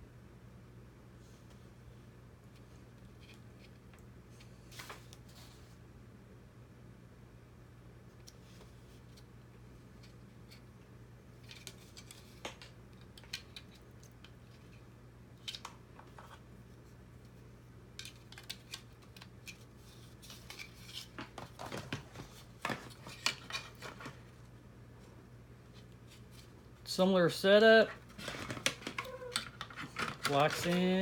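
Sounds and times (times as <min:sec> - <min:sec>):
faint steady hum: 0:00.0 - 0:31.0
plastic parts clicking and clattering: 0:18.0 - 0:24.2, 0:28.1 - 0:31.0.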